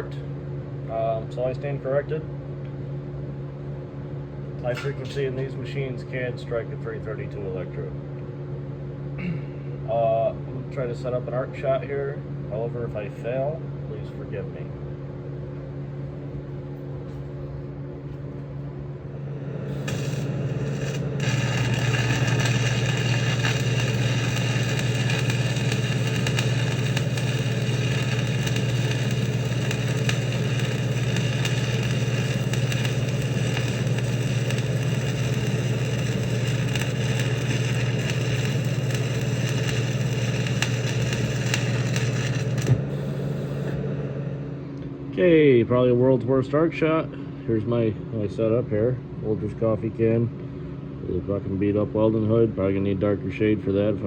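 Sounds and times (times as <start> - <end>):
welder humming: 4.6 - 5.5, 17.1 - 45.4
welding arc crackling and hissing: 19.7 - 43.8.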